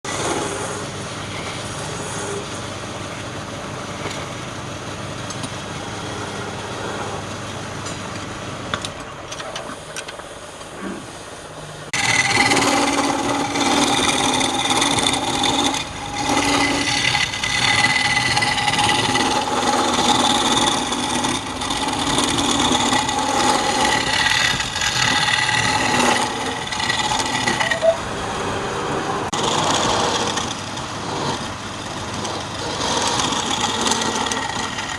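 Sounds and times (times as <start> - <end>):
lathe tool cutting spinning wood: 0.0 - 3.6, 4.6 - 7.4, 11.9 - 34.9
steady machine whine: 0.1 - 34.9.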